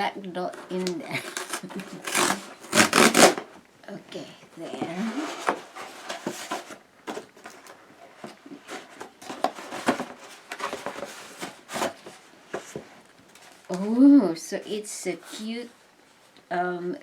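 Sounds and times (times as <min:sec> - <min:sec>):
cardboard packaging being opened: 0:00.5 - 0:03.5, 0:04.8 - 0:13.8.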